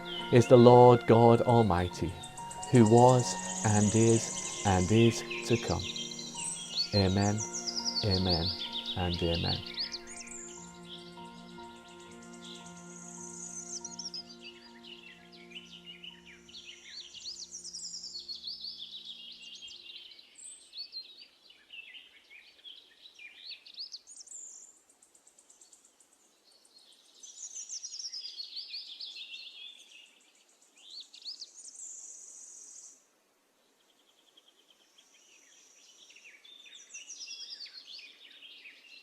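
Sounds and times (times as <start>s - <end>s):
held musical chord: 0.0s - 18.8s
songbirds singing: 0.0s - 39.0s.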